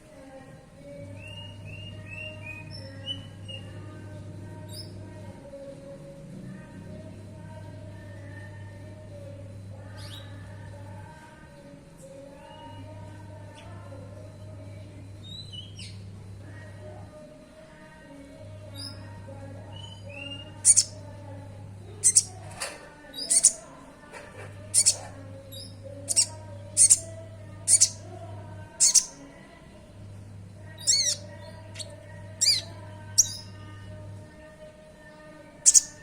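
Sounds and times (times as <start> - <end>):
faint low hum: 0.0 - 36.0
high-pitched bird chirps: 20.6 - 21.0, 22.0 - 22.4, 23.2 - 23.7, 24.7 - 27.1, 27.7 - 28.0, 28.8 - 29.2, 30.8 - 33.5, 35.6 - 36.0.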